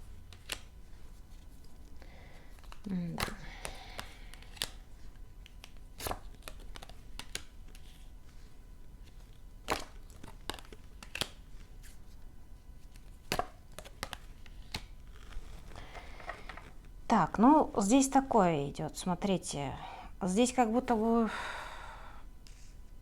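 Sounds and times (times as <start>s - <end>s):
cards shuffled and laid down: 0.3s - 8.4s, 9.0s - 12.2s, 12.8s - 16.9s, 22.4s - 22.8s
sharp card clicks: 2.5s - 4.8s, 13.0s - 16.7s.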